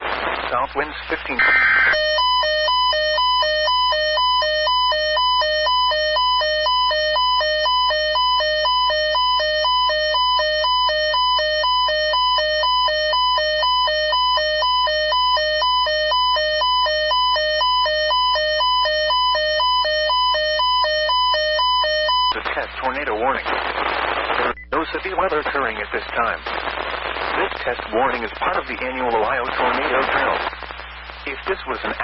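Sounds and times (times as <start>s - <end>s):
electronic two-tone alarm: 1.4s - 22.4s.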